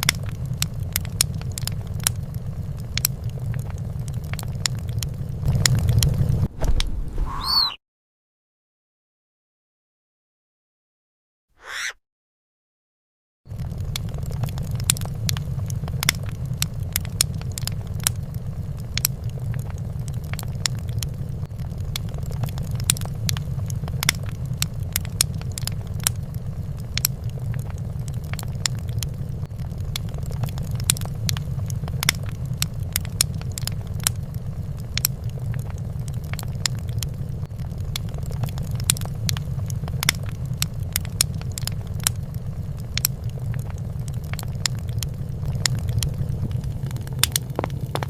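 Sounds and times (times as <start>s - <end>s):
fire crackling and popping: 0.0s - 6.9s, 13.5s - 48.0s
low fire rumble: 0.0s - 7.4s, 13.5s - 48.0s.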